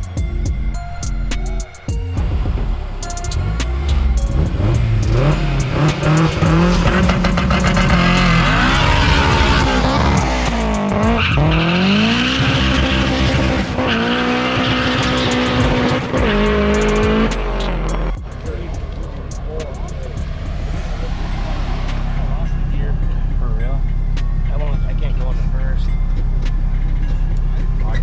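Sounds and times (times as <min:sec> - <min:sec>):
car engine accelerating hard: 0:02.2 - 0:25.5.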